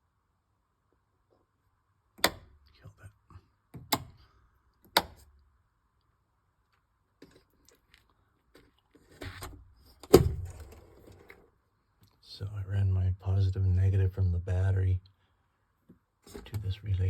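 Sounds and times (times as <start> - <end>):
heavy thunk: 10.1 - 10.7.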